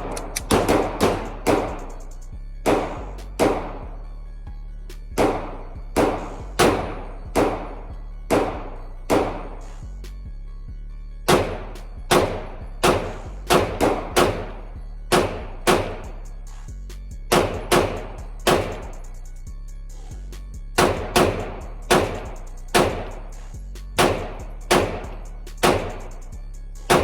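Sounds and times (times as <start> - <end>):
pistol shots: 0.0 - 1.9, 2.6 - 3.9, 5.2 - 9.6, 11.3 - 16.2, 17.3 - 18.9, 20.8 - 23.2, 24.0 - 26.1.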